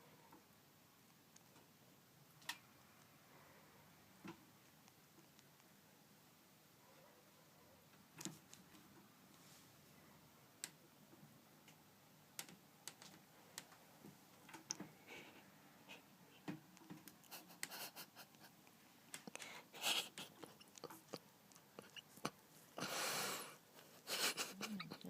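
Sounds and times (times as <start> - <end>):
faint clicks and rustles: 7.8 - 22.8.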